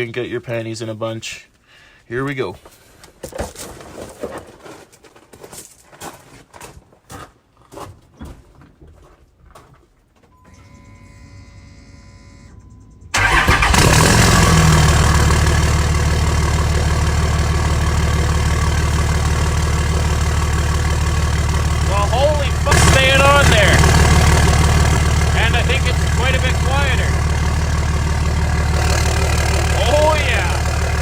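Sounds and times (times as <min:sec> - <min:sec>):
faint hum: 0:10.4 - 0:13.2
diesel engine starting and idling: 0:10.5 - 0:31.0.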